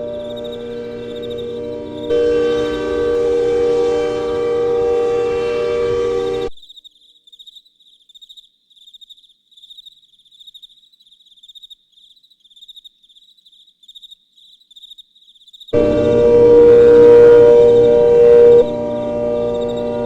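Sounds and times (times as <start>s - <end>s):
cricket chirping: 0.0s - 3.8s, 6.4s - 20.0s
loud held tone: 0.0s - 6.6s, 15.8s - 20.0s.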